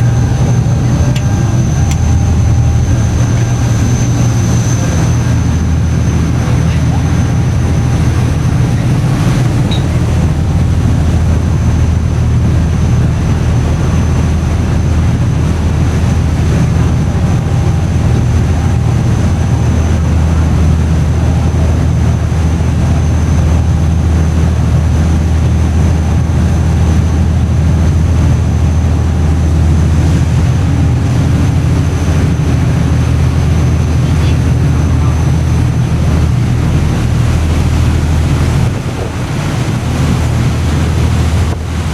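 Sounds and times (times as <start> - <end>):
faint high whine: 0.0 - 24.2
ferry engines droning: 0.0 - 41.9
rushing water and wind: 0.0 - 41.9.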